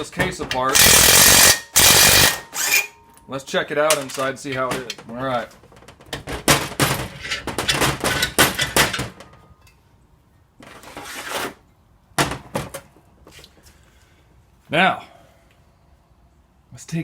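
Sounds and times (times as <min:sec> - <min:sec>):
metal scraping rush: 0:00.8 - 0:03.0
metal knocks and clanks: 0:03.9 - 0:09.4.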